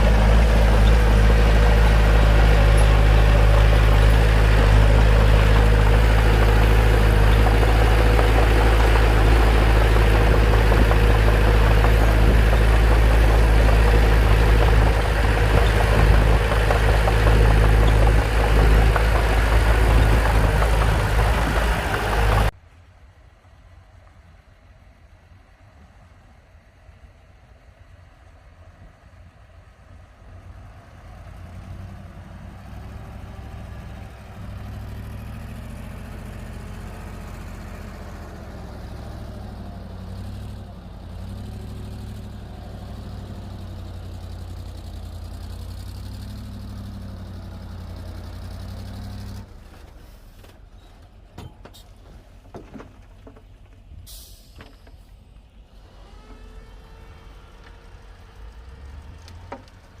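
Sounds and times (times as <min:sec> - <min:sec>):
bulldozer diesel engine: 0:00.0 - 1:00.0
brief hiss: 0:54.0 - 0:55.3.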